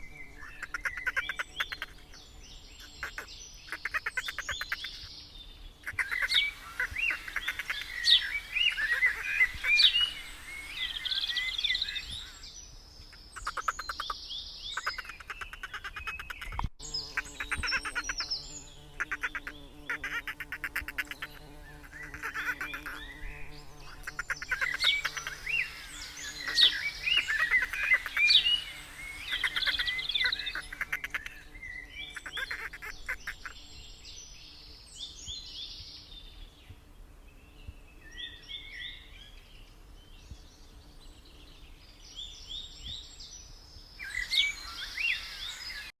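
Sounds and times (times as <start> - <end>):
rapid rattling bird trills: 0.0 - 5.1, 5.8 - 12.4, 13.1 - 33.6
birds chirping and calling: 0.0 - 36.0, 44.0 - 45.9.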